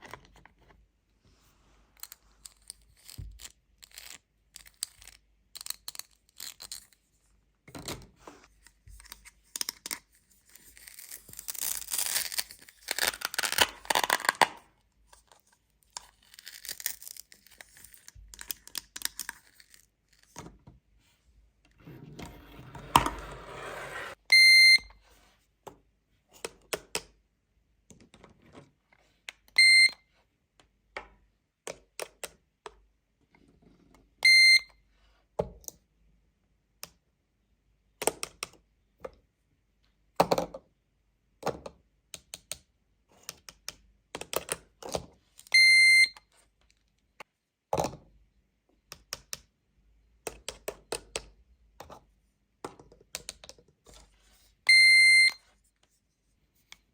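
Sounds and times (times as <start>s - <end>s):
toy cash register beeping: 54.7s - 55.4s.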